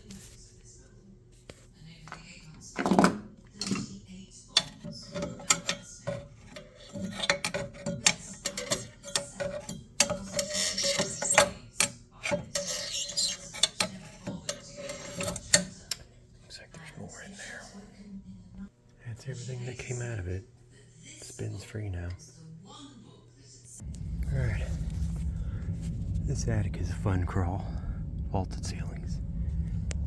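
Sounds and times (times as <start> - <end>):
tools clicking and knocking on metal: 2.8 - 4.0, 4.6 - 16.1.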